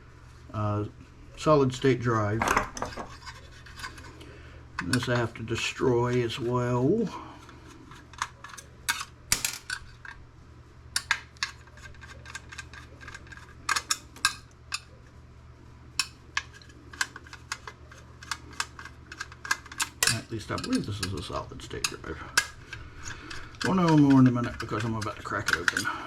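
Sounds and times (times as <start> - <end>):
faint steady hum: 0.0 - 26.0
clicks of computer parts and tools: 16.0 - 21.2.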